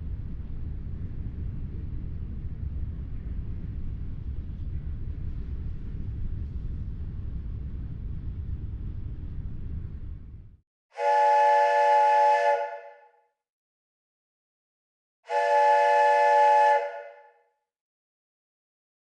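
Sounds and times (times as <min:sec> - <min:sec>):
steam whistle blasts: 0:11.0 - 0:13.1, 0:15.3 - 0:17.4.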